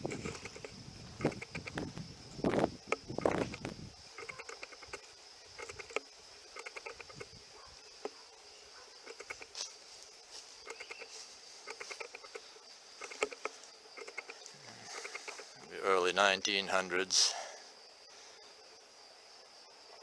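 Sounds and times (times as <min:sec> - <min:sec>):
high insect drone: 0:00.0 - 0:20.0
footsteps through grass: 0:09.5 - 0:12.0.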